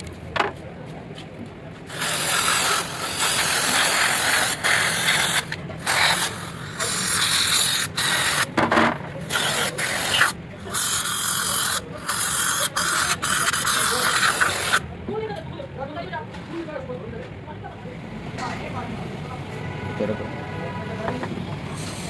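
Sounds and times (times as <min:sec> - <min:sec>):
pressurised spray hissing: 0:01.9 - 0:08.5, 0:09.2 - 0:14.8, 0:21.7 - 0:22.0.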